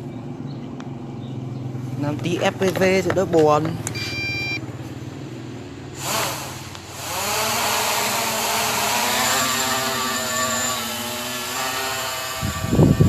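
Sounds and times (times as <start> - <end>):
electric motors whining: 6.0 - 13.0.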